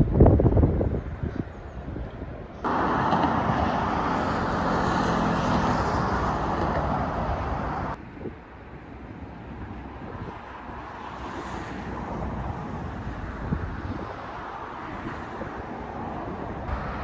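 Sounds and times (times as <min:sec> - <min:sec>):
vehicle in motion: 0:00.0 - 0:08.0, 0:08.9 - 0:17.0
wind noise: 0:00.0 - 0:17.0.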